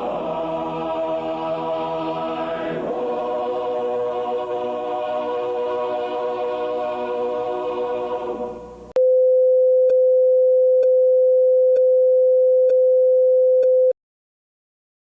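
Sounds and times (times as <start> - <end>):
choir singing an anthem: 0.0 - 8.9.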